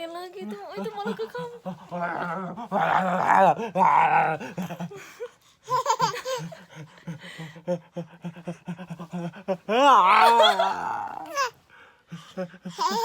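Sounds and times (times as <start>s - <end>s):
baby laughing: 5.7s - 6.6s, 12.7s - 13.0s.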